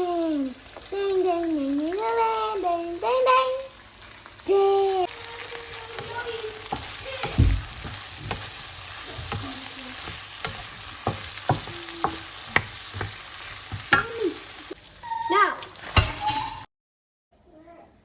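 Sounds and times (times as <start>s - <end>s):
food sizzling in a frying pan: 0.0s - 16.7s
utensil knocking against pan: 6.0s - 14.2s.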